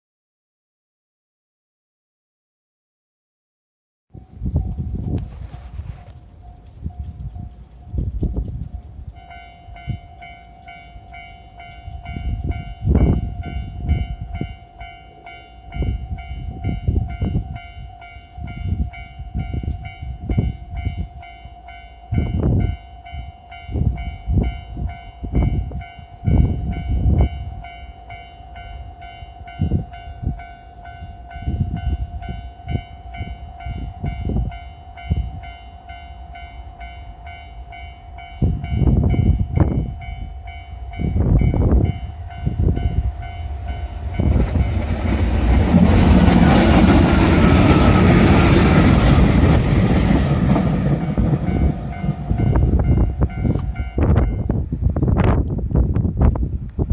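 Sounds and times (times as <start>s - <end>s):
level-crossing alarm ringing: 8.9s - 54.5s
low rumbling gusts: 11.0s - 14.9s, 15.7s - 21.3s, 28.6s - 56.9s.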